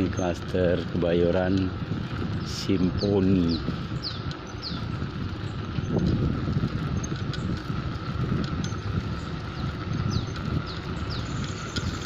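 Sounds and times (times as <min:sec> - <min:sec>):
wind buffeting microphone: 0:00.0 - 0:12.0
bird chirp: 0:02.3 - 0:05.0, 0:09.2 - 0:12.0.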